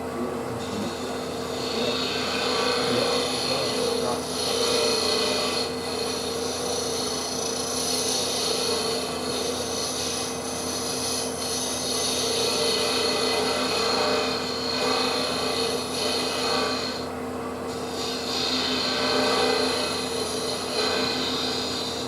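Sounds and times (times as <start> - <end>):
wood lathe motor hum: 0.0 - 22.0
wood rubbing against tool: 0.4 - 17.1, 17.8 - 22.0.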